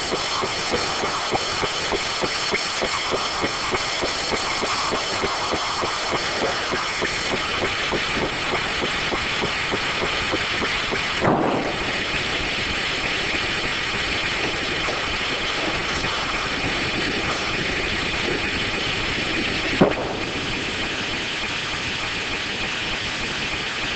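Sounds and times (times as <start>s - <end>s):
circular sawmill running: 0.0s - 23.9s
sharp clack: 11.2s - 12.5s, 19.8s - 20.6s.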